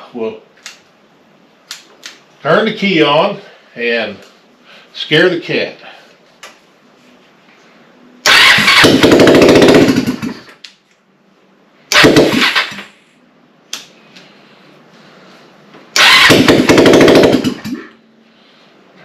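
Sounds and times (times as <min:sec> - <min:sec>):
engine starting and dying: 0:08.2 - 0:10.6, 0:11.9 - 0:12.9, 0:16.0 - 0:17.9.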